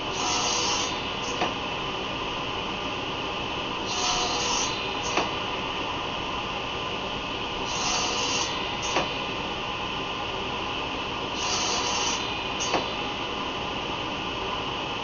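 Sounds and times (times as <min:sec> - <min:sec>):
table saw running: 0:00.0 - 0:01.0, 0:03.9 - 0:05.1, 0:07.7 - 0:08.7, 0:11.4 - 0:12.3
saw cutting wood: 0:00.2 - 0:01.0, 0:03.9 - 0:04.8, 0:07.7 - 0:08.6.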